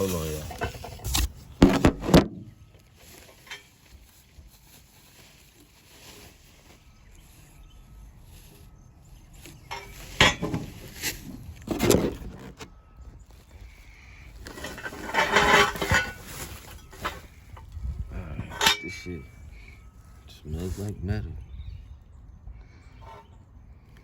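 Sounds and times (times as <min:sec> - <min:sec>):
metal exhaust parts knocking: 0:00.0 - 0:02.7, 0:09.4 - 0:12.5, 0:14.4 - 0:19.3.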